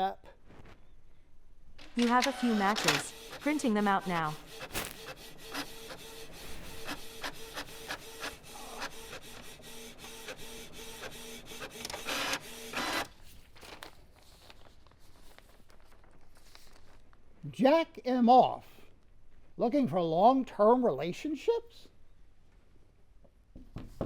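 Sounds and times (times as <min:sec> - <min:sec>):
printer printing: 0:01.8 - 0:13.8
printer rushing burst: 0:01.9 - 0:13.1.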